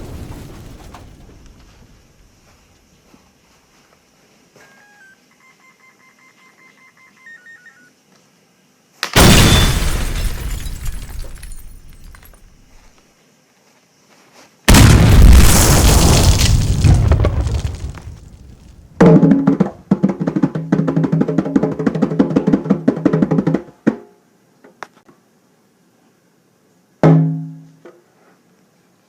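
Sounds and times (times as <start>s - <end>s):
loud explosion booms: 0.0s - 2.3s, 9.2s - 12.4s, 14.7s - 19.0s.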